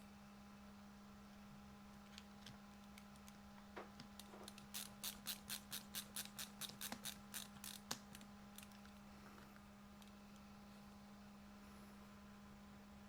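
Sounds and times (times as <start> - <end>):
steady low hum: 0.0 - 13.0
small mechanical clicks: 4.2 - 8.9.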